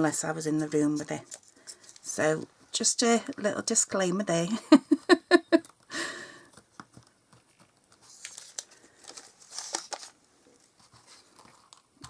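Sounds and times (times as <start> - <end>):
card and plastic rustling: 0.6 - 2.1, 5.6 - 12.0.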